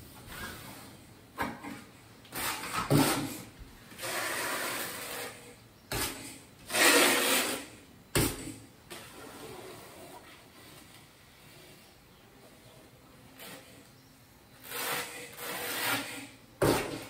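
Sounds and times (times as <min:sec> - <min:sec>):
trowel scraping membrane: 0:02.3 - 0:07.8, 0:13.3 - 0:13.9, 0:14.6 - 0:17.0.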